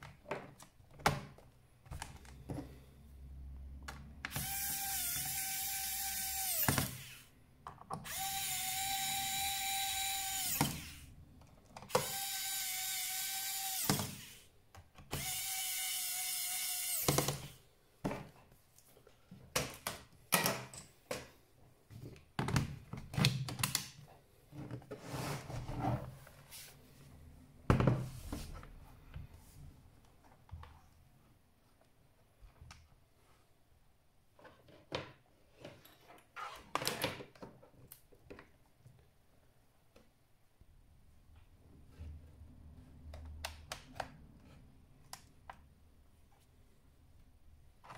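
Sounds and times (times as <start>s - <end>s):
electric screwdriver whining: 4.3s - 7.3s, 8.0s - 11.1s, 11.9s - 14.4s, 15.1s - 17.6s.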